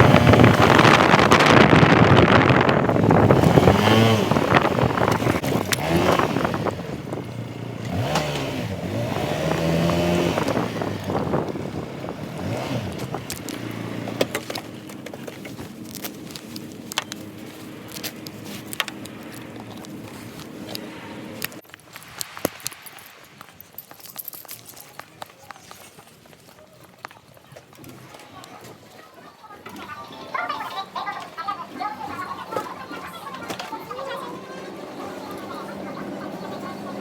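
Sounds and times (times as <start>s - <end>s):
motorcycle engine accelerating: 0.0s - 21.6s, 32.2s - 37.0s.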